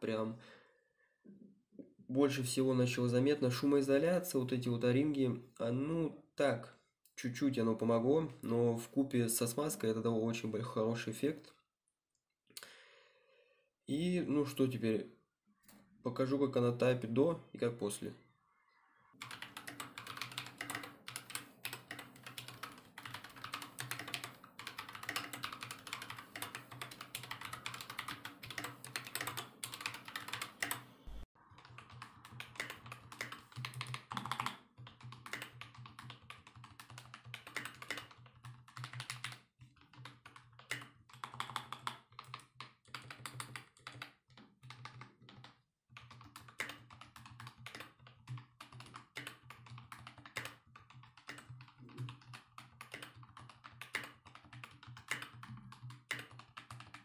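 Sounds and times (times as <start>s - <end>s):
fast mechanical keyboard typing: 19.2s - 57.0s.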